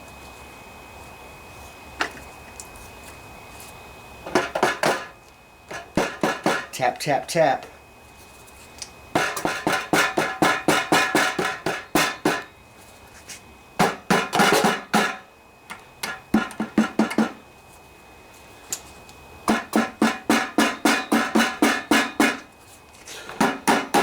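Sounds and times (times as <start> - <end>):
hammer tapping on metal: 5.7 - 6.7, 9.2 - 12.5, 13.8 - 15.2, 16.0 - 17.4, 19.5 - 22.5, 23.4 - 24.0.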